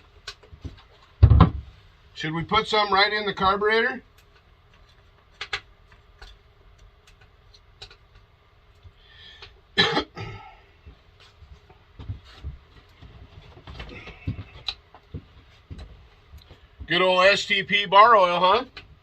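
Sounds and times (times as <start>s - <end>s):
clicks and knocks of handling: 4.1s - 9.6s
man coughing: 9.8s - 10.5s.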